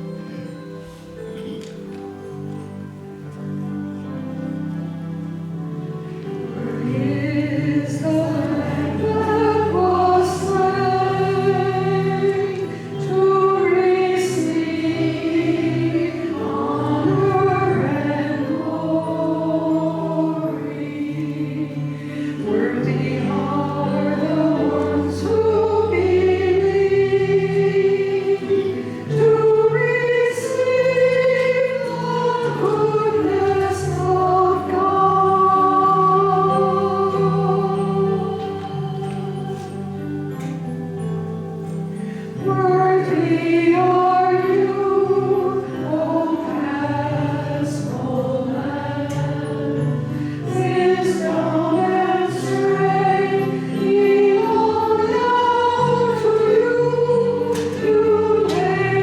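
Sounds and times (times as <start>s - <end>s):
group singing a slow hymn: 6.3s - 59.0s.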